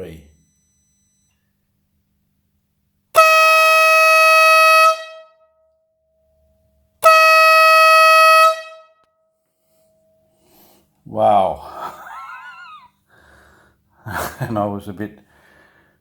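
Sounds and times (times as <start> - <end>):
loud air horn blasts: 3.1 - 5.4, 7.0 - 9.0.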